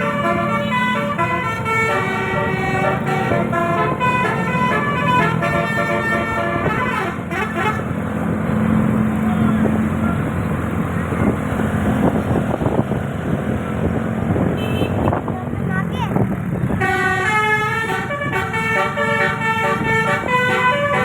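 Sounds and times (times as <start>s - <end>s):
bus multi-horn melodic tune: 0.0s - 8.5s, 14.5s - 15.3s, 16.6s - 21.0s
street noise: 0.0s - 21.0s
vehicle engine hum: 0.0s - 21.0s.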